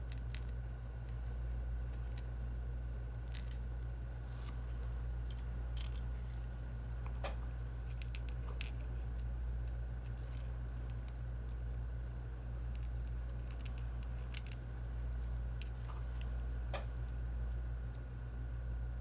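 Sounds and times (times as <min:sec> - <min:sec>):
low electrical hum: 0:00.0 - 0:19.0
small tools clicking on parts: 0:12.0 - 0:17.2.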